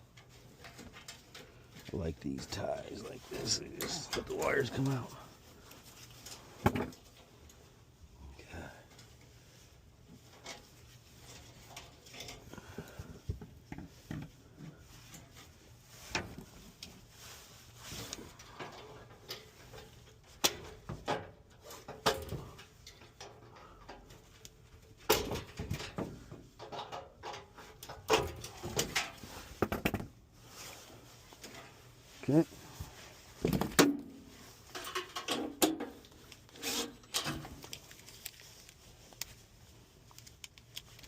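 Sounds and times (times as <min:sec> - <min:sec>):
metal parts clicking and rattling: 0:34.6 - 0:39.4, 0:40.0 - 0:41.0.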